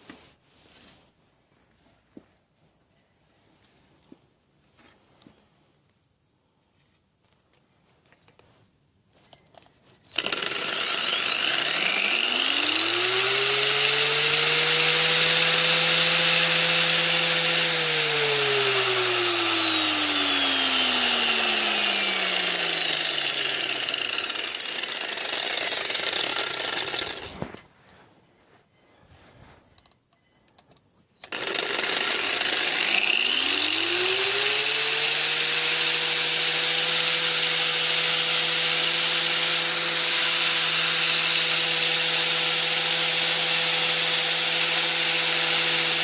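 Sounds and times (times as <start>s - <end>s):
angle grinder motor whine: 10.1s - 27.4s, 31.2s - 46.0s.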